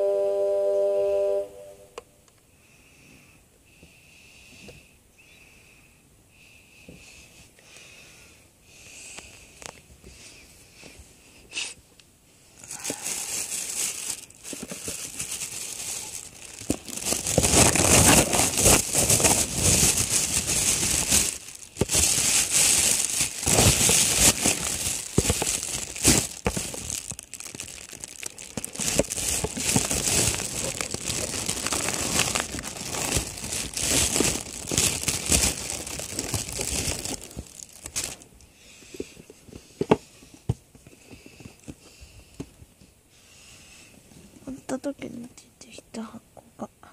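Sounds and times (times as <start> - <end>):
packaging crinkling: 12.6 - 38.3.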